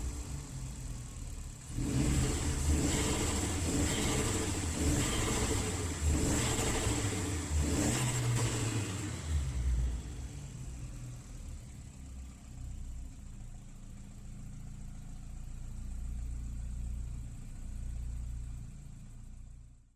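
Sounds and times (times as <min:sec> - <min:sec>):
car engine revving and idling: 0:00.0 - 0:19.8.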